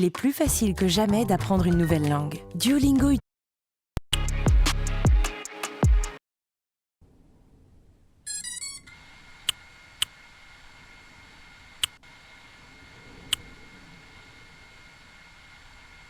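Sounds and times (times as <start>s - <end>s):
high electronic beeps: 8.3s - 8.9s
faint steady hiss: 8.9s - 16.0s.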